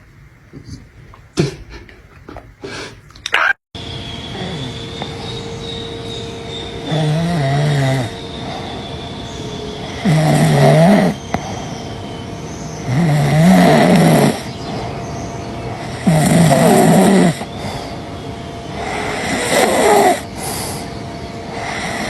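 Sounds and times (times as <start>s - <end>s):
loud snoring: 4.3s - 5.1s, 6.8s - 8.9s, 9.8s - 11.9s, 12.8s - 14.9s, 15.7s - 18.1s, 18.7s - 20.9s, 21.5s - 22.0s.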